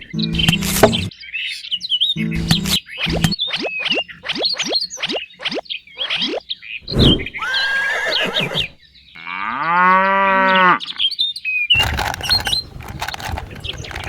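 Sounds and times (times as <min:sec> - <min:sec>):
bird-like chirps: 0:00.0 - 0:09.2
cow mooing: 0:09.2 - 0:11.0.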